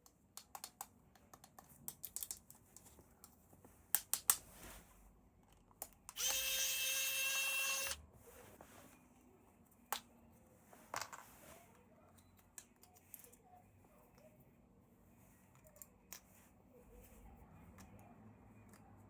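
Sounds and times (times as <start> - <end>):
small electric motor buzzing: 6.2 - 8.0.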